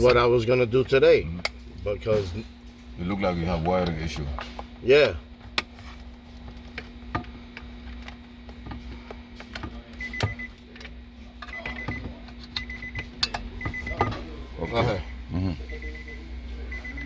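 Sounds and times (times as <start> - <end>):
steady low hum: 0.0 - 17.0
rapid high electronic beeps: 12.6 - 13.0, 13.6 - 17.0.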